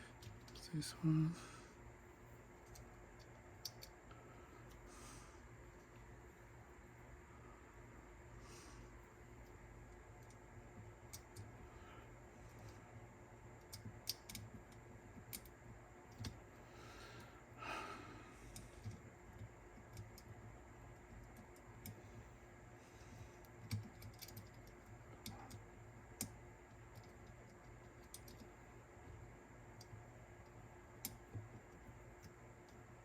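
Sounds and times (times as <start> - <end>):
small tools clicking on metal parts: 28.0 - 28.4.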